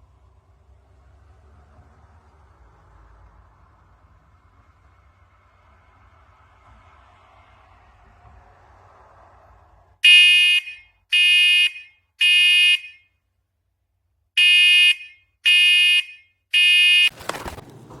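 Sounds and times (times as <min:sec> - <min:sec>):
noisy rustle: 0:17.1 - 0:18.0.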